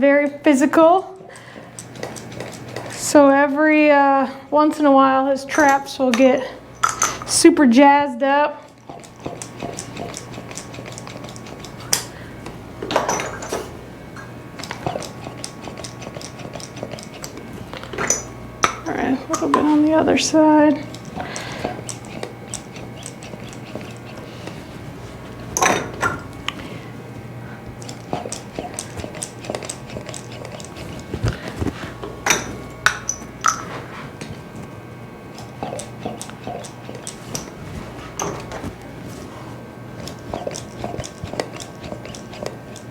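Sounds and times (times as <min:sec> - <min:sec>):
cupping cups clicking: 0:01.3 - 0:03.1, 0:05.5 - 0:07.4, 0:08.7 - 0:24.6, 0:25.5 - 0:26.7, 0:27.8 - 0:33.7, 0:35.4 - 0:37.6, 0:40.0 - 0:42.9.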